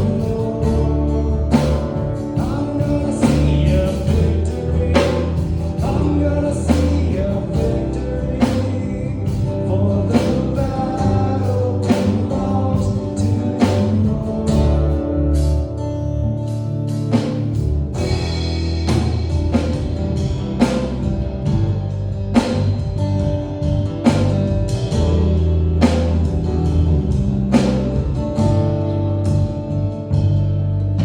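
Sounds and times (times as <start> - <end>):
band playing instrumental: 0.0 - 15.8, 16.4 - 31.0
drum hits: 17.1 - 28.6.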